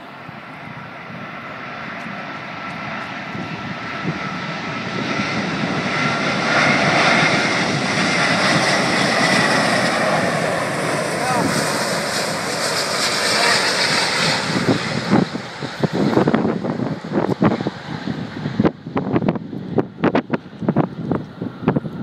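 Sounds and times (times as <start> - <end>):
jet engines roaring with high whine: 0.0 - 22.0.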